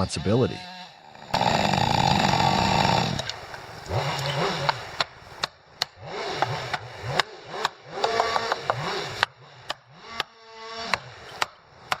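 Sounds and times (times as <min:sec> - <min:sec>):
chainsaw revving: 0:00.0 - 0:12.0
sharp cracks: 0:01.3 - 0:10.3.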